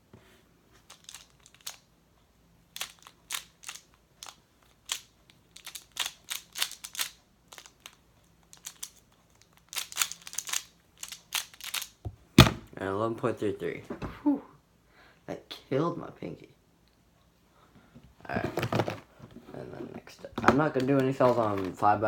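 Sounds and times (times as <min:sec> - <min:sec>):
puzzle cube plastic clicks: 0:00.8 - 0:01.8, 0:02.7 - 0:12.0.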